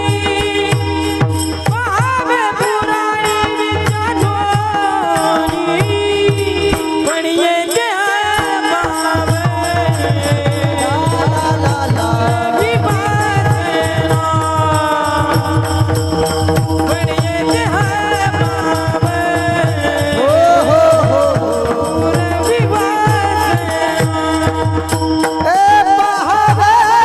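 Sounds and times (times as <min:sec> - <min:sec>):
devotional singing: 0:00.0 - 0:27.0
hand drum beat: 0:08.4 - 0:27.0
held drone: 0:10.5 - 0:25.1.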